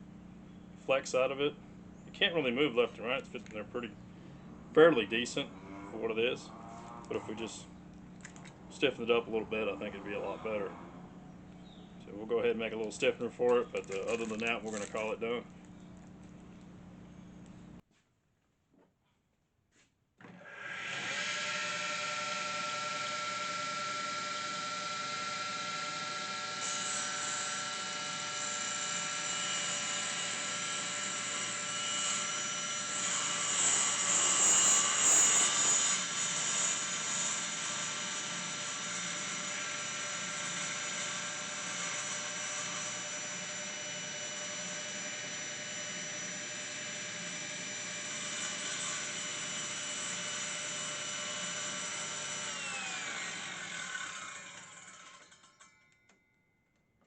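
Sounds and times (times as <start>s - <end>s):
power tool motor whining: 20.3s - 55.6s.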